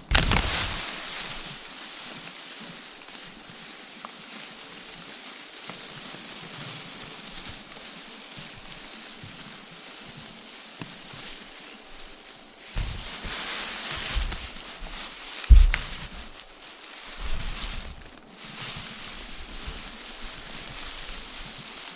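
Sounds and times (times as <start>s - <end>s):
paper confetti rustling: 0.0s - 21.9s
low thuds: 15.5s - 16.3s.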